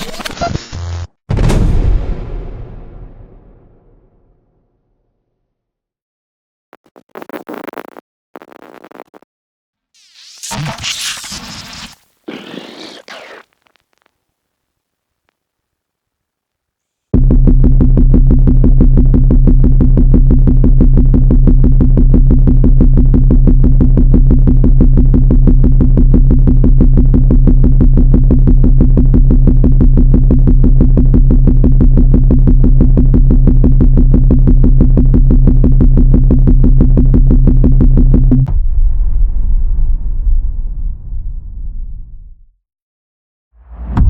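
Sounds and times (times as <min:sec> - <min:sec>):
pulsing low synthesizer tone: 0:17.2 - 0:38.8.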